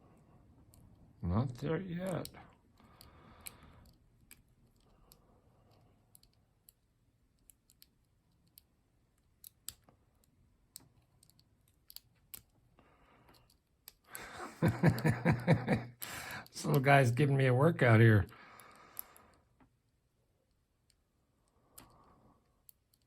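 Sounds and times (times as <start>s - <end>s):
lock pick clicking: 10.7s - 12.5s.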